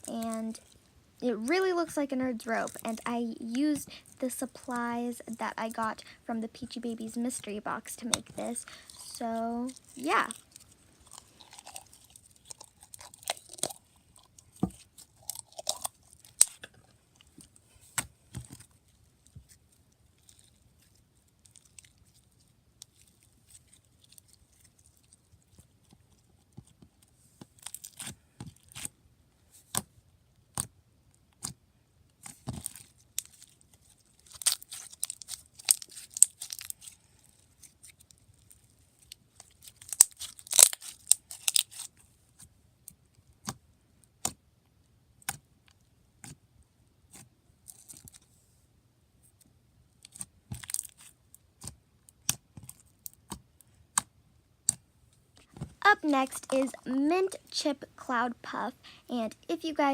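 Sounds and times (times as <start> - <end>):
slime squished by hand: 34.2 - 38.1, 39.4 - 41.9.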